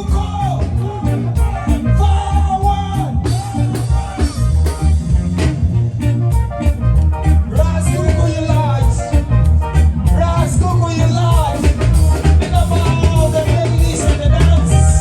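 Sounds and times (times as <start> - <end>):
reggae music with singing: 0.0 - 15.0.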